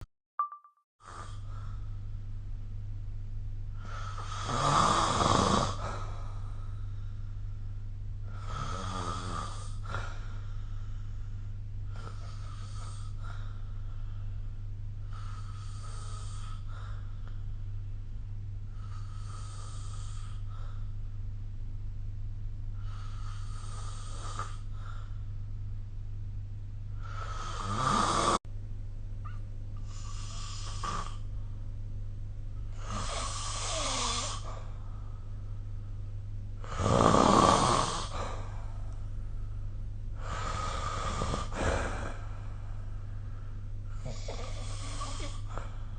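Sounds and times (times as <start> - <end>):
steady low hum: 1.0 - 45.9
person snoring: 3.8 - 6.5, 8.2 - 10.4, 11.9 - 13.5, 15.1 - 17.1, 18.7 - 20.9, 22.8 - 25.1, 27.0 - 28.4, 29.8 - 31.3, 32.7 - 34.8, 36.6 - 38.9, 40.2 - 42.9, 43.8 - 45.9.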